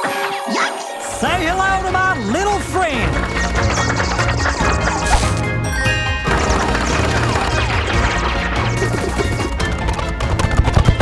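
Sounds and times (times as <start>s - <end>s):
cartoon chase music: 0.0s - 11.0s
slapstick crash and whack effects: 5.1s - 5.4s.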